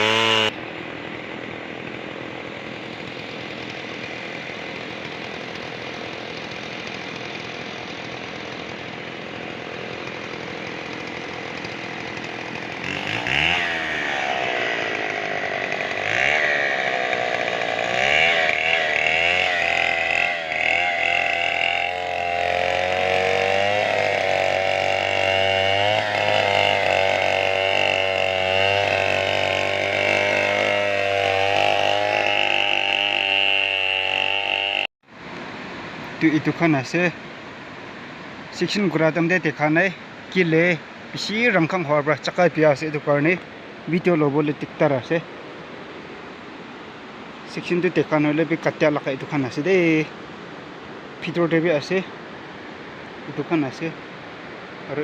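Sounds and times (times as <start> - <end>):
chainsaw engine revving: 0.0 - 34.9.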